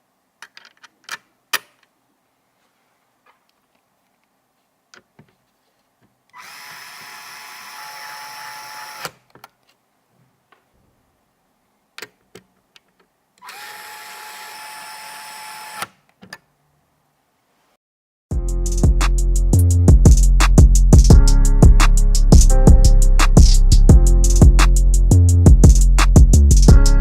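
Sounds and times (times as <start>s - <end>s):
electric screwdriver running: 6.4s - 9.2s, 13.4s - 15.9s.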